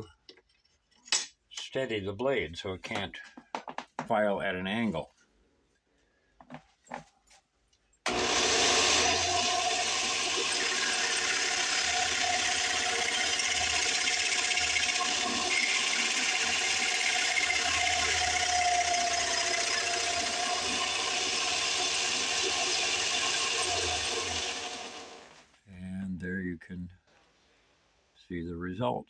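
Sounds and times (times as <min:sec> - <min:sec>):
motor-driven file rasping: 0:08.1 - 0:25.4.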